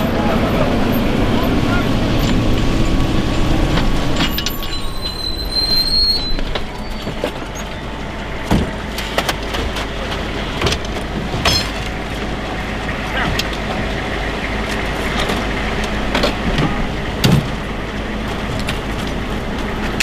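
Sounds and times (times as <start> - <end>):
high-pitched squeal: 0.0 - 8.0
heavy vehicle rumbling: 0.0 - 20.0
metal knocks and clanks: 8.4 - 12.3.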